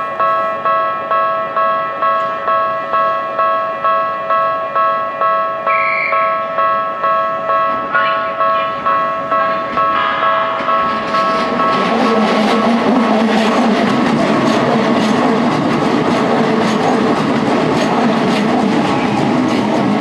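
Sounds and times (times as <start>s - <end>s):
approaching train: 0.0s - 20.0s
level-crossing warning bell: 0.0s - 20.0s
brief high tone: 5.7s - 6.4s.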